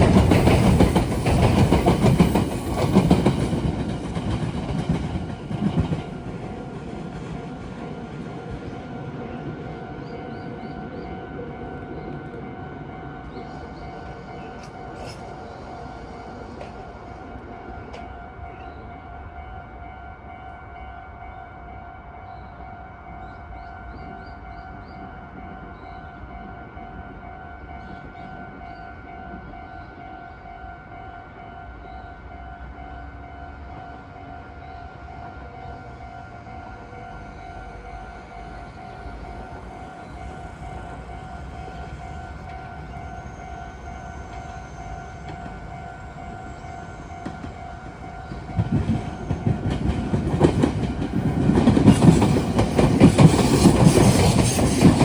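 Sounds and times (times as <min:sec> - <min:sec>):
passing train rumble: 0:00.0 - 0:55.0
level crossing warning bell: 0:17.4 - 0:53.0.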